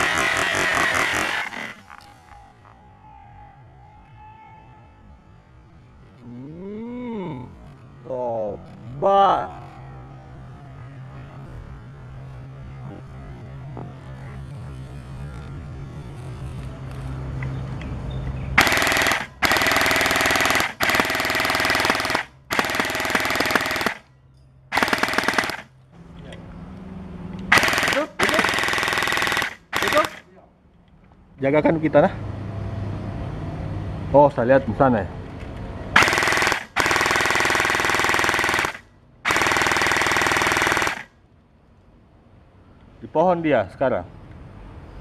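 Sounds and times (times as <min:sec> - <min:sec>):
airsoft gun rapid clicking: 0:00.0 - 0:02.0, 0:18.6 - 0:24.0, 0:24.7 - 0:25.7, 0:27.5 - 0:30.2, 0:36.0 - 0:41.1.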